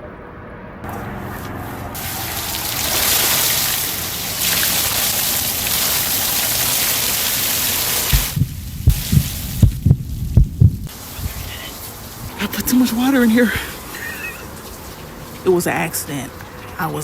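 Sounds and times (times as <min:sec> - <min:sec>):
water rushing: 0:00.9 - 0:17.0
low thumps: 0:08.1 - 0:11.0.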